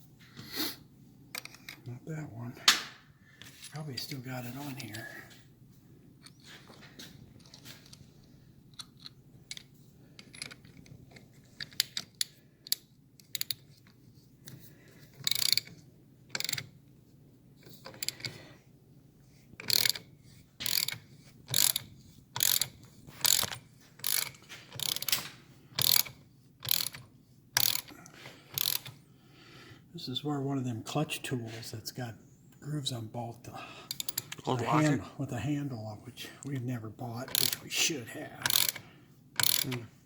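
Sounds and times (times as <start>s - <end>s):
ratchet wrench clicking: 11.6s - 13.7s, 15.2s - 16.7s, 17.7s - 18.4s, 19.6s - 27.0s, 27.6s - 27.9s, 28.5s - 29.0s, 37.3s - 37.6s, 38.4s - 38.8s, 39.4s - 39.8s.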